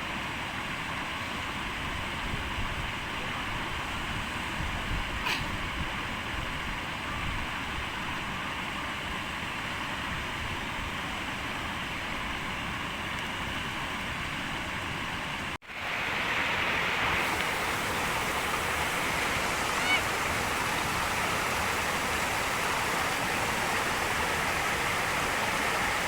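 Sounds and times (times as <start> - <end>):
steady rushing noise: 15.7 - 26.0.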